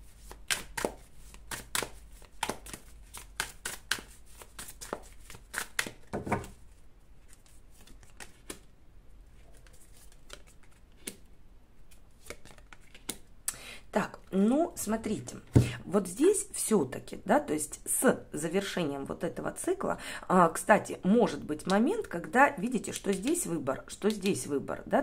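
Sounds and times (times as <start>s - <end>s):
cards shuffled and snapping: 0.1s - 8.7s, 9.4s - 11.3s, 11.9s - 13.3s, 22.9s - 24.5s.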